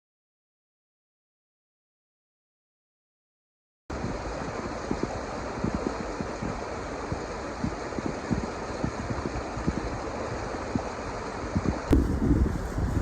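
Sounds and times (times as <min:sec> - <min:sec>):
steady rushing noise: 0:03.9 - 0:13.0
soft low thumps: 0:11.6 - 0:13.0.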